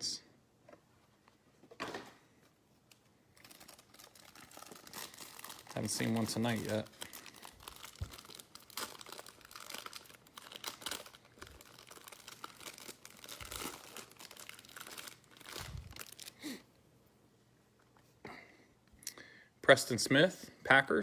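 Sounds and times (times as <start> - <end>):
foil wrappers crinkling and tearing: 3.3 - 16.5.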